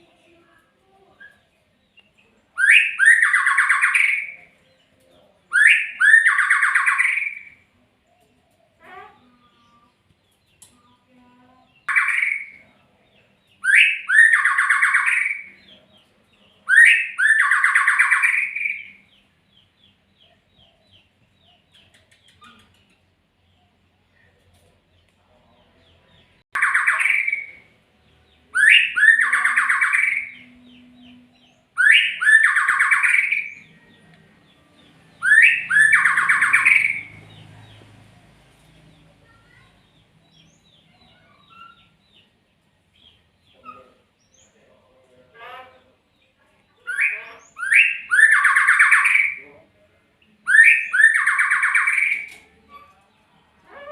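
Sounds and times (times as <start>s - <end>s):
faint bird twittering: 26.2s - 37.8s
bird harsh buzzy calls: 35.2s - 37.2s.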